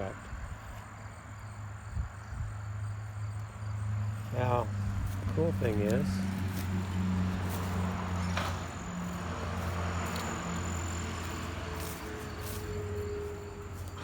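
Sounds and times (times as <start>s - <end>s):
insects trilling: 5.6s - 14.0s.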